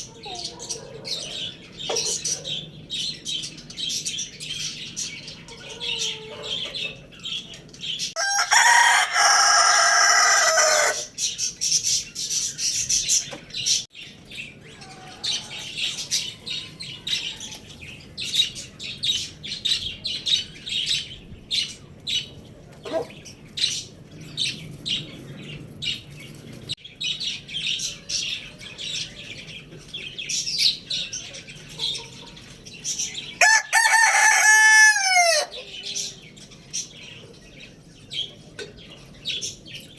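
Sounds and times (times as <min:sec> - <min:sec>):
small birds chirping: 0:00.0 - 0:39.9
rooster crowing: 0:08.2 - 0:11.1, 0:14.8 - 0:17.8, 0:33.4 - 0:35.7.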